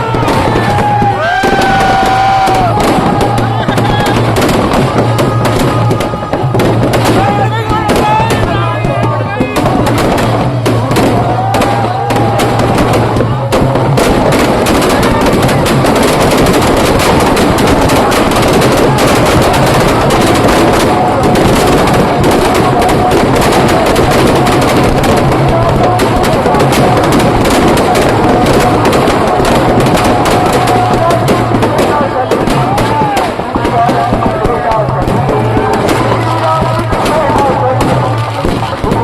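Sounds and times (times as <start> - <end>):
firecrackers crackling rapidly: 0.0 - 39.0.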